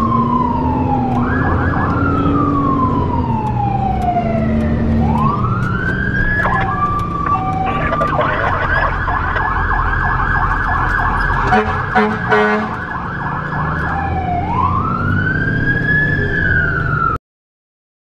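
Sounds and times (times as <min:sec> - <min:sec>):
fire truck siren: 0:00.0 - 0:17.2
truck engine running: 0:00.6 - 0:13.4
air horn blasts: 0:11.4 - 0:12.8.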